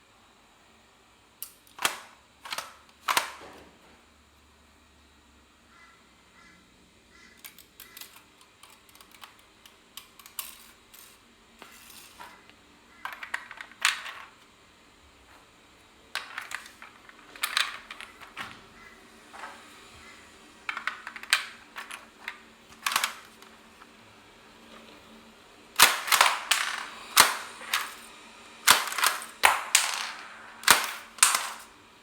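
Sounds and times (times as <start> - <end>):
plastic toy gun mechanism clacking: 7.4 - 10.6, 22.8 - 23.4, 25.8 - 28.1, 28.7 - 31.7.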